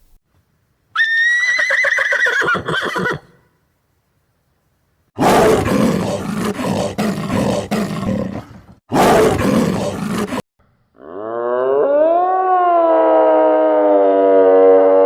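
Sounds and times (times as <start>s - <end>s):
large animal roaring: 5.2s - 10.4s, 11.0s - 15.0s
rising pitched animal call: 11.0s - 15.0s.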